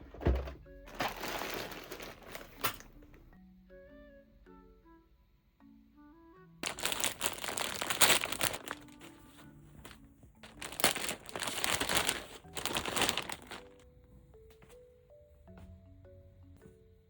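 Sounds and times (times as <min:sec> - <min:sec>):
crinkly material rustling: 0:00.2 - 0:03.0, 0:06.6 - 0:13.8
soft mallet music: 0:00.4 - 0:17.0.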